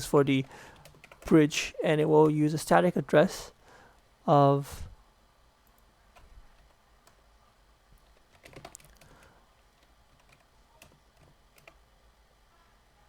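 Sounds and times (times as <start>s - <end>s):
keyboard typing: 0.4s - 1.4s, 8.0s - 11.8s.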